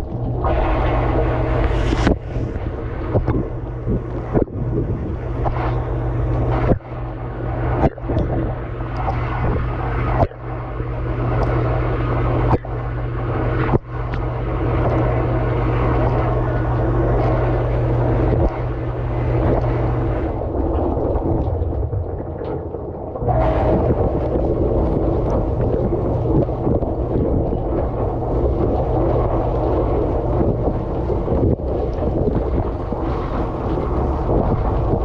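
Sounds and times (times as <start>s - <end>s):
low pump hum: 0.0s - 35.0s
water spraying and splashing: 23.4s - 35.0s.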